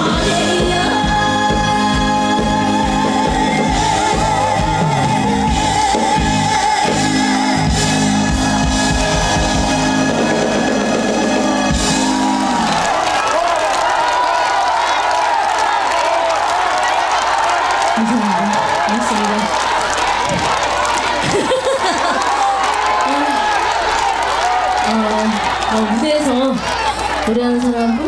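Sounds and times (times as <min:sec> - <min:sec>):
live band playing: 0:00.0 - 0:13.1.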